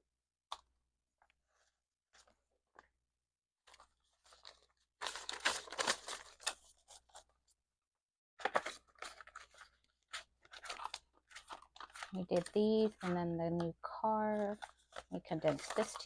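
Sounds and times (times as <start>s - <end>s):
banknotes rustling: 3.7s - 7.3s, 8.4s - 16.0s.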